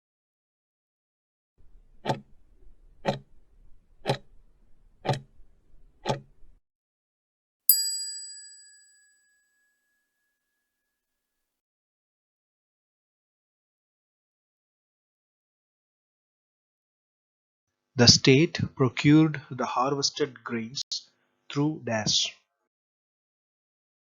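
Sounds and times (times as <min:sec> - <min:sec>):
clock-like ticks: 0:02.0 - 0:02.2, 0:03.0 - 0:03.2, 0:04.0 - 0:04.2, 0:05.0 - 0:05.3, 0:06.0 - 0:06.2
bell ding: 0:07.7 - 0:10.6.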